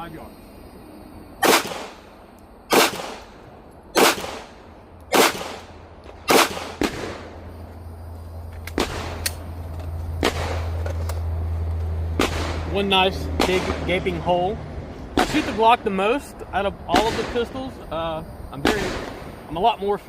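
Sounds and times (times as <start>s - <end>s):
pistol shots with echo: 1.4s - 2.1s, 2.7s - 7.3s, 10.2s - 10.8s, 12.2s - 12.8s, 13.4s - 13.9s, 15.1s - 15.6s, 16.9s - 17.5s, 18.6s - 19.2s.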